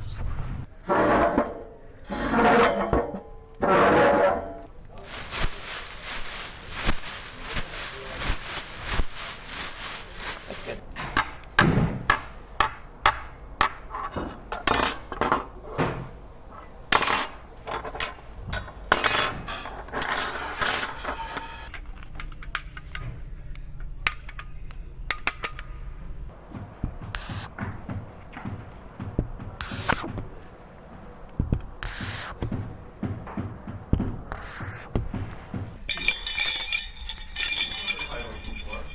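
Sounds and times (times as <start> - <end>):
knocks clatters and clinks: 16.9 - 21.9, 35.8 - 38.9.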